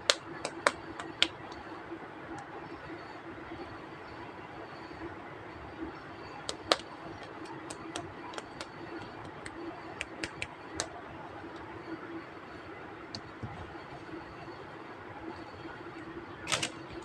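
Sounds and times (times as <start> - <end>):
faint background hum: 0.0 - 17.0
plastic pieces clicking: 6.5 - 10.9, 16.5 - 16.8.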